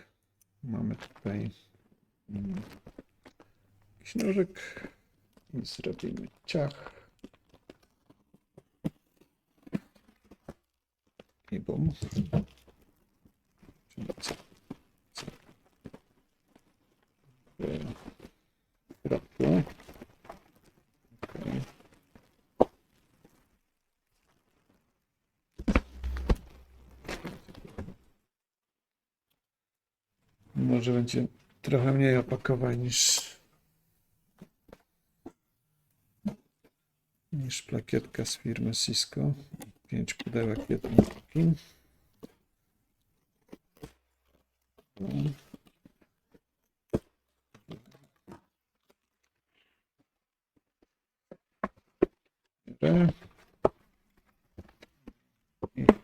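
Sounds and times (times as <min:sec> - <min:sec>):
cardboard handling noise: 0:07.2 - 0:12.9, 0:25.6 - 0:28.1
cardboard boxes tapping and knocking: 0:25.6 - 0:27.5.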